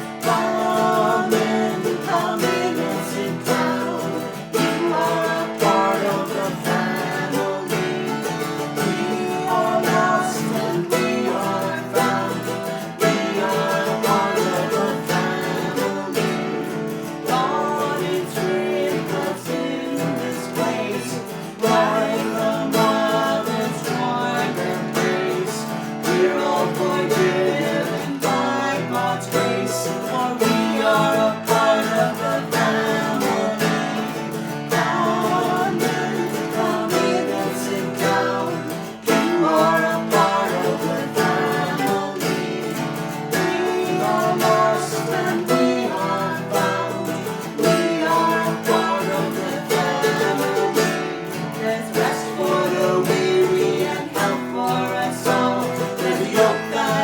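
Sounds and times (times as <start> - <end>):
plucked string instrument hymn tune: 0.0 - 57.0.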